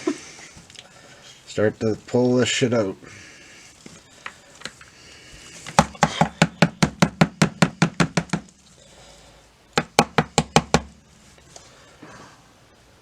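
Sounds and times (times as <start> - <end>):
drain filter knocking on plastic pail: 5.8 - 8.5.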